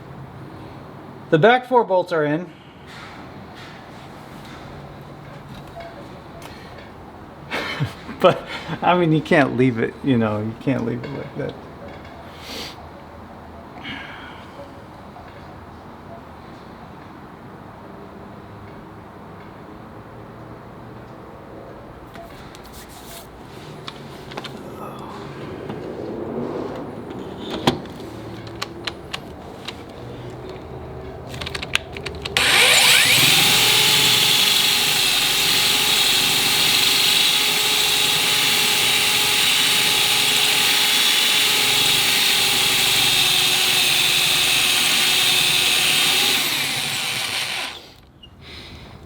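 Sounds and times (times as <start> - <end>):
electric drill running: 32.4 - 48.0.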